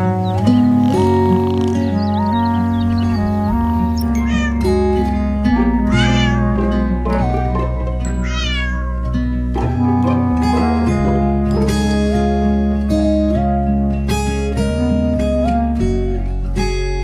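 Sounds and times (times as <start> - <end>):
background music: 0.0 - 17.0
cat meowing: 3.5 - 5.0, 5.8 - 7.0, 8.2 - 9.2.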